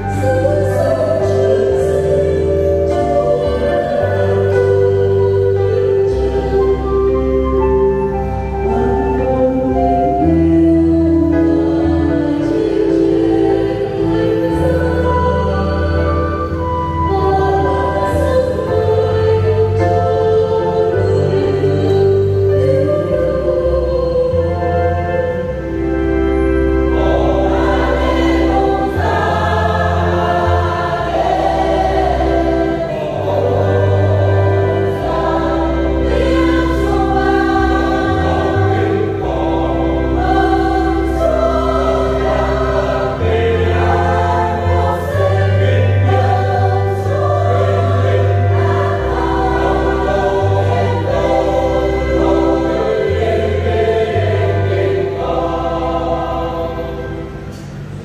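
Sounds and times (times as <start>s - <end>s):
choir singing a hymn: 0.0s - 58.0s
sustained low bass notes: 0.0s - 58.0s.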